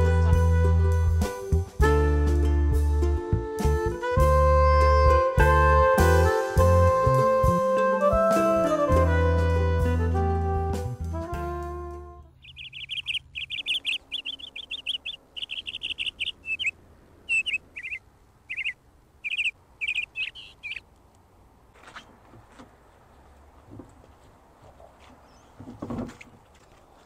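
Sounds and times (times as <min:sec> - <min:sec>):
music: 0:00.0 - 0:12.3
small bird chirping: 0:12.3 - 0:20.9.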